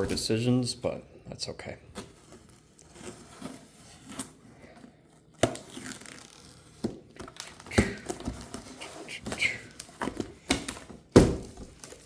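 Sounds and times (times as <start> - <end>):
packaging crinkling and tearing: 1.9 - 10.8, 11.4 - 12.0.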